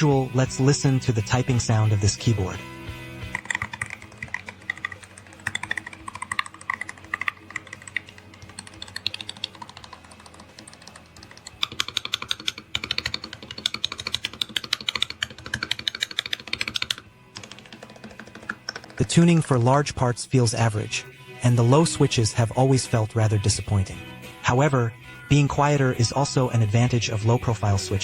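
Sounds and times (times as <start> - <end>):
keyboard key clicks: 3.3 - 19.1.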